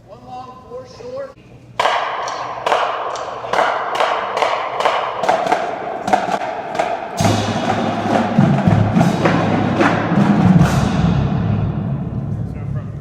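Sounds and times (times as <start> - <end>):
wooden stick clicks: 1.8 - 5.6
low drum tones: 2.0 - 13.0.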